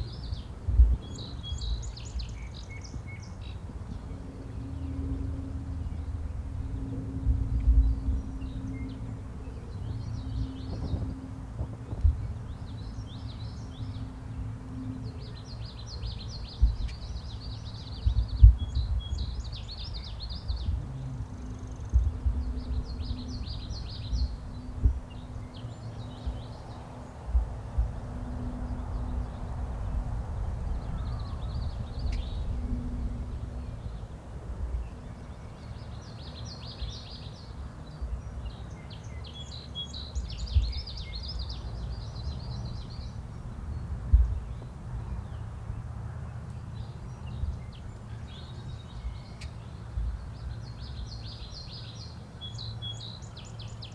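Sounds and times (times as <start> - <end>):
steady low rumble: 0.0 - 36.1, 40.2 - 46.2
small songbirds trilling: 12.2 - 53.9.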